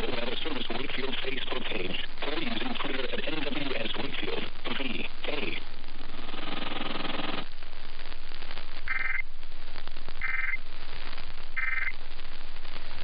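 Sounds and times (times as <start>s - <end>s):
radio hiss: 0.0s - 13.0s
two-tone digital chirps: 8.9s - 9.2s, 10.2s - 10.6s, 11.6s - 11.9s.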